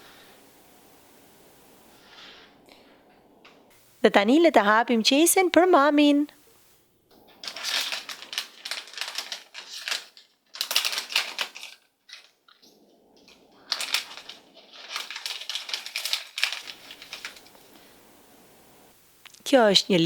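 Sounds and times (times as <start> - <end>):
plastic bag crinkling: 7.2 - 18.1.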